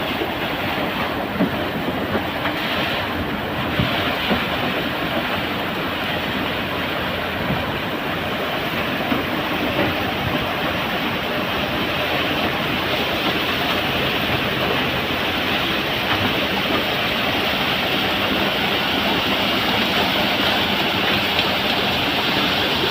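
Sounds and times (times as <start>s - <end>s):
diesel engine rumbling: 0.0s - 22.9s.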